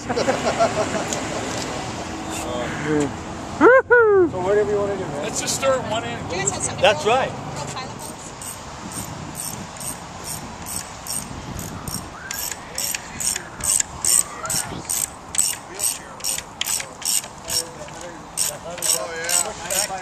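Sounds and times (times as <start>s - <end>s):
ratchet wrench clicking: 8.0s - 20.0s.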